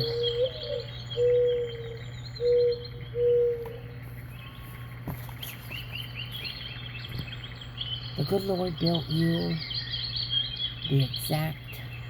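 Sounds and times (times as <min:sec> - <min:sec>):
bird cooing: 0:00.0 - 0:04.9
faint high chirping: 0:00.0 - 0:12.0.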